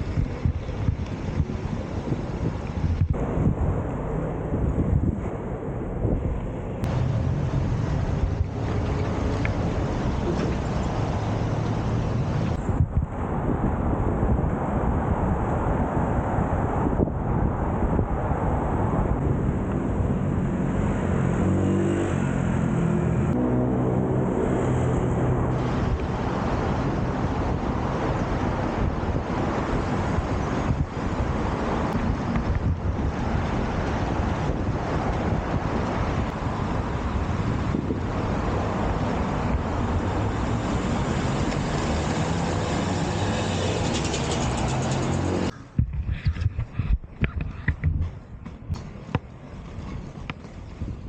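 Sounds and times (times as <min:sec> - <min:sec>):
vehicle engine humming: 0:00.0 - 0:13.4, 0:18.7 - 0:45.9
city street traffic: 0:00.0 - 0:51.0
wind rush on microphone: 0:00.0 - 0:51.0
skate wheels rolling on pavement: 0:06.2 - 0:13.2, 0:25.5 - 0:45.5, 0:47.6 - 0:51.0.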